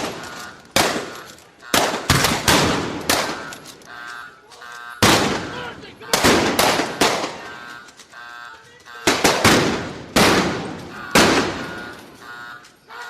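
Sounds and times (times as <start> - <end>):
gunshots with echo: 0.0 - 3.7, 5.0 - 7.7, 9.0 - 12.2.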